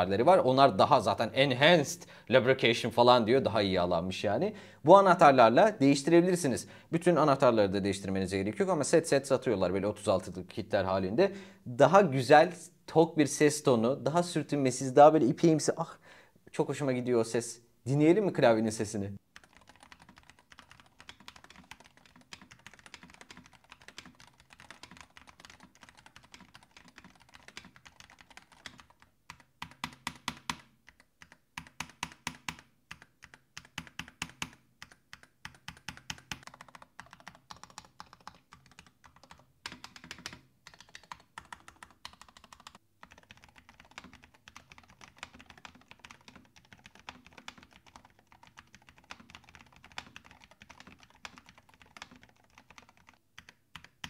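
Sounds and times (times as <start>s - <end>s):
thocky keyboard typing: 19.4s - 54.0s.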